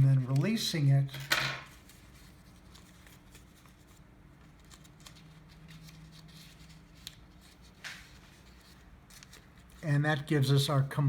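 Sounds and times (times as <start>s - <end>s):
low room hum: 0.0s - 11.0s
paper rustling: 1.6s - 10.2s.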